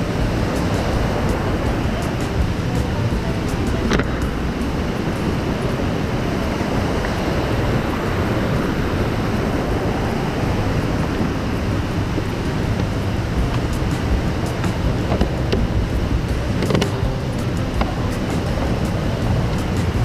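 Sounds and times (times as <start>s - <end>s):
water rushing: 0.0s - 20.0s.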